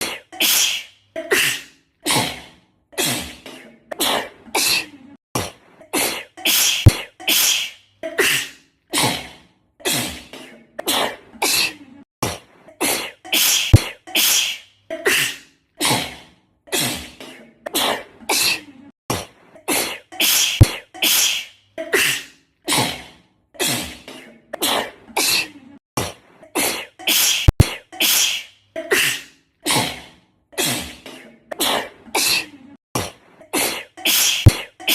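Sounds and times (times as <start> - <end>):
girl sneezing: 0.0 - 2.3, 5.9 - 9.2, 12.8 - 16.0, 19.7 - 22.9, 26.6 - 29.9, 33.5 - 34.9.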